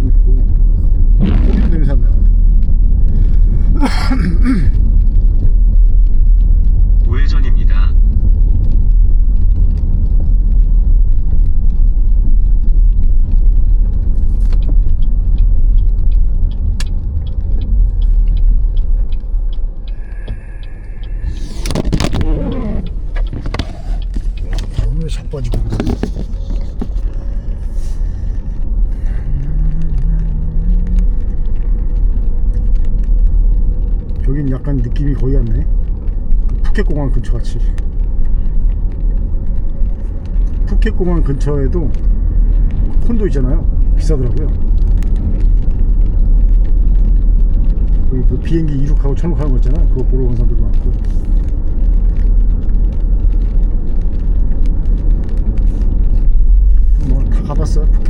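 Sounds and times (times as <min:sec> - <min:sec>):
road and tyre rumble: 0:00.0 - 0:58.0
brief low humming tone: 0:28.9 - 0:31.4.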